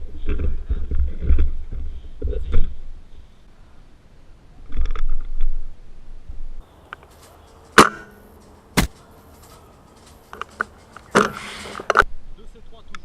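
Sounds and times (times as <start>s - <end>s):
rustling of handling: 6.6s - 12.0s
airsoft gun shots: 8.8s - 9.0s.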